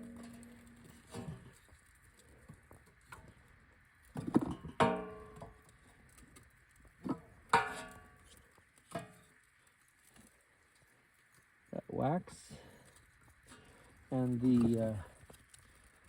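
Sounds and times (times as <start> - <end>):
metal clanking with ringing tone: 0.0 - 1.3.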